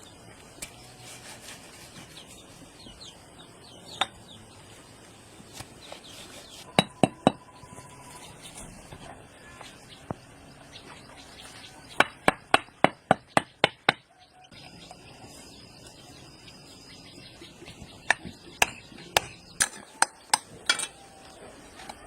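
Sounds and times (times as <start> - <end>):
hand tool striking: 6.7 - 7.4.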